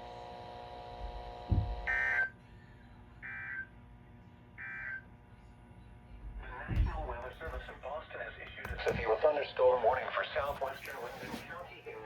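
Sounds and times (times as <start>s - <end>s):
faint steady hum: 0.0s - 12.0s
low thud: 1.5s - 1.8s.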